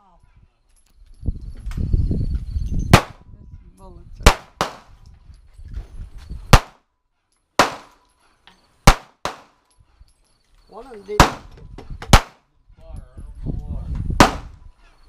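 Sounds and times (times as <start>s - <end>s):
wind rumble on microphone: 0.0s - 6.6s, 11.1s - 15.0s
gunshots: 4.3s - 4.9s, 6.5s - 6.8s, 7.6s - 8.0s, 8.8s - 9.5s, 11.2s - 11.5s, 12.1s - 12.4s, 14.2s - 14.6s.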